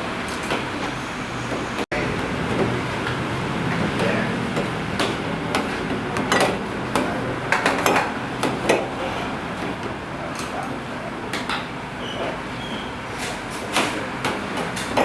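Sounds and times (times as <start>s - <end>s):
kitchen utensils and dishes clinking: 2.2s - 9.3s.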